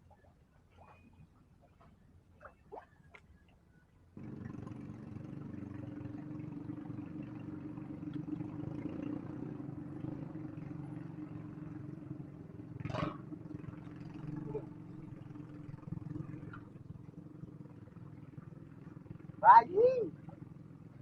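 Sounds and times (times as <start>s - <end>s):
engine humming: 4.2s - 21.0s.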